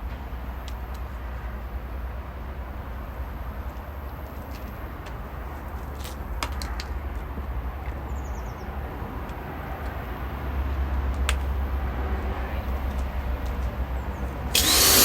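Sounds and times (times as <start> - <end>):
pressure washer spraying: 14.6 - 15.0.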